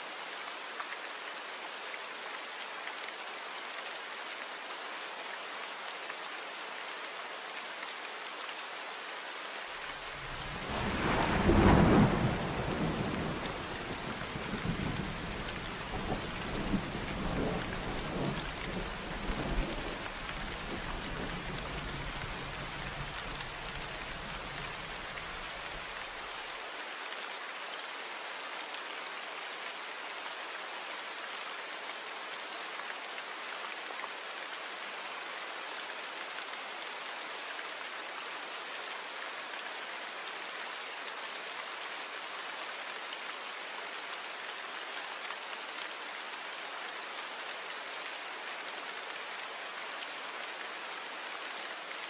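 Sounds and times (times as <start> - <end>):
steady rainfall: 0.0 - 52.0
thunderclap and rolling rumble: 10.3 - 13.6.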